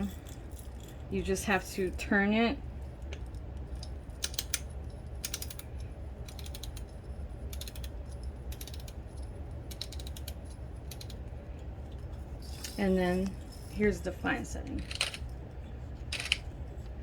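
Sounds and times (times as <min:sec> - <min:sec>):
grinder dial ratchet clicks: 0:05.2 - 0:05.6, 0:06.2 - 0:06.9, 0:07.5 - 0:09.0, 0:09.7 - 0:11.2.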